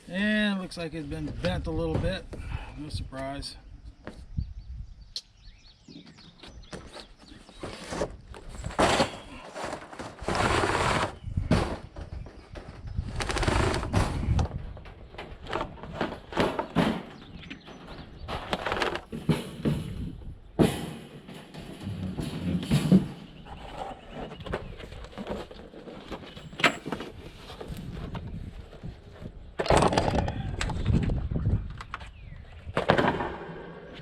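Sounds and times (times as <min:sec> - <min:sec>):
cage scraping and rustling: 0:07.5 - 0:11.9
wire cage rattling and clanking: 0:26.4 - 0:27.0.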